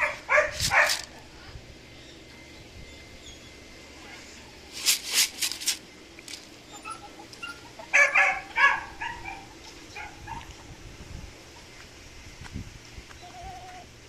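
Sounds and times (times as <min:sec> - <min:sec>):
dog barking: 0:00.0 - 0:01.2, 0:07.9 - 0:10.5.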